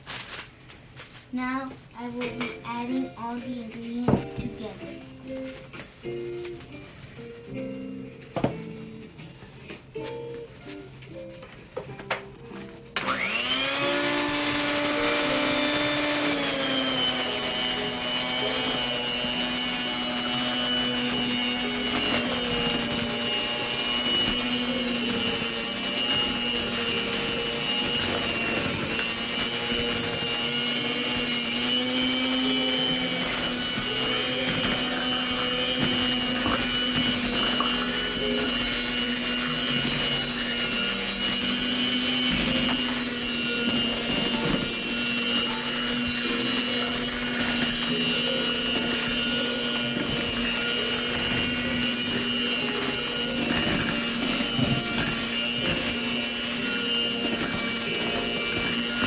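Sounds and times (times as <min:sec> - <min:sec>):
electric hand mixer whining: 0:01.2 - 0:59.0.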